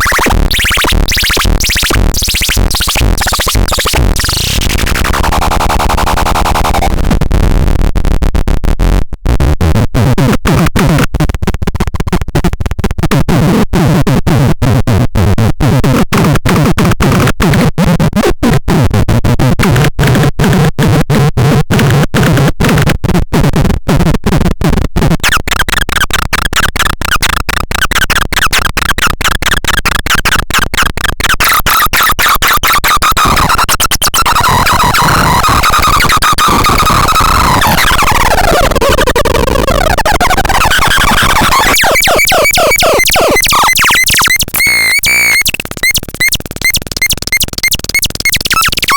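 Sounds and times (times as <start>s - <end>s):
harsh stuttering synth noise: 0.0s - 7.7s, 25.2s - 48.9s.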